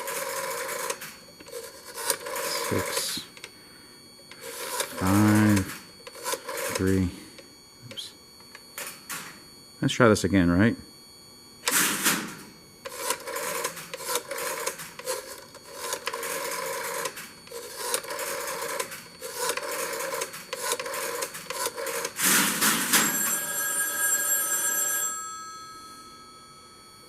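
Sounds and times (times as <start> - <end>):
telephone bell ringing: 0.0 - 3.2, 12.9 - 27.0.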